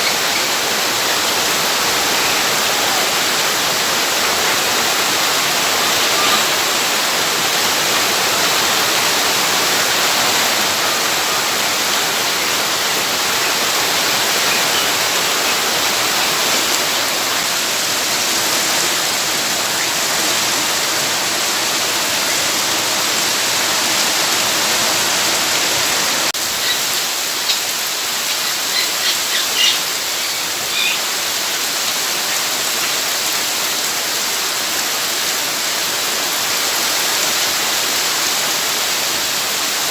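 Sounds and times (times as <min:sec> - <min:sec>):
rushing water: 0:00.0 - 0:39.9.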